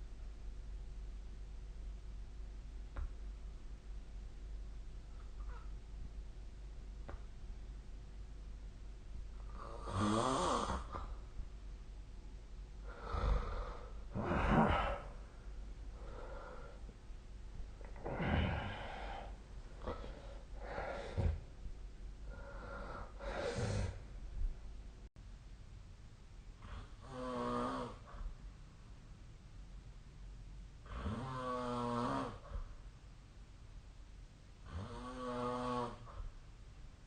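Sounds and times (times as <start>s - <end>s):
person snoring: 9.4s - 11.2s, 12.8s - 15.2s, 17.8s - 21.4s, 22.3s - 24.0s, 26.6s - 28.2s, 30.8s - 32.6s, 34.6s - 36.2s
faint breaths: 12.8s - 24.7s.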